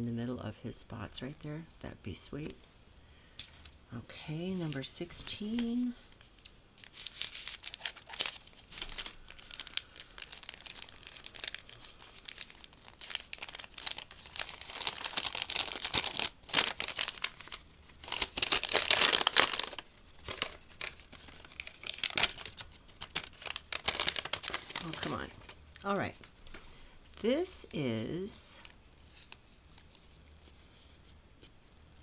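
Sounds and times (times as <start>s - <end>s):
package crinkling and tearing: 5.5s - 25.6s.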